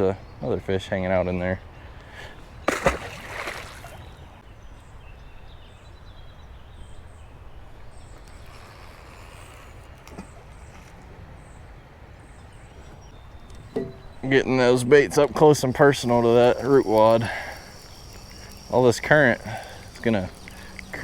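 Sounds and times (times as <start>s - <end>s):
river rumble: 2.6s - 4.4s
water splash: 2.7s - 4.2s
bird chirps: 15.4s - 21.0s.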